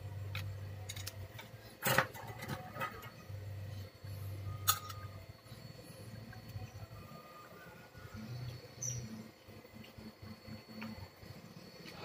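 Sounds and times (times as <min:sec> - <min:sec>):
low hum: 0:00.0 - 0:12.0
small tools clicking and tapping: 0:00.3 - 0:03.1.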